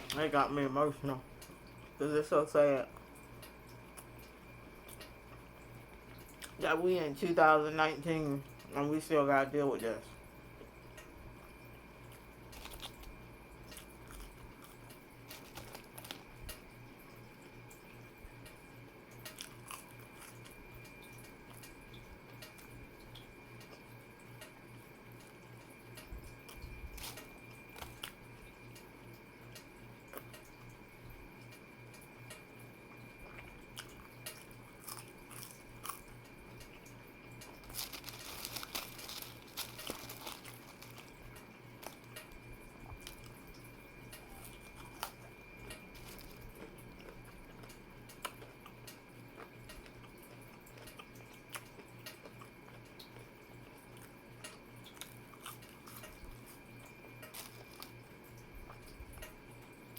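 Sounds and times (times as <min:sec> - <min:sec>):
steady electrical hum: 0:00.0 - 0:59.9
person chewing and biting: 0:12.0 - 0:16.7, 0:19.2 - 0:21.7, 0:26.4 - 0:28.3, 0:33.2 - 0:36.8, 0:37.4 - 0:59.4.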